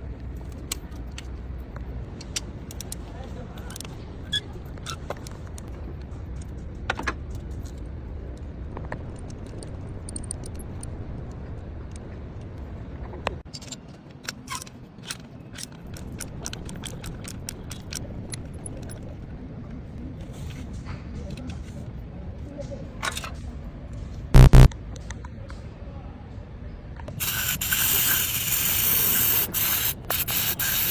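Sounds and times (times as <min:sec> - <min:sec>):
steady low hum: 0:24.4 - 0:24.8.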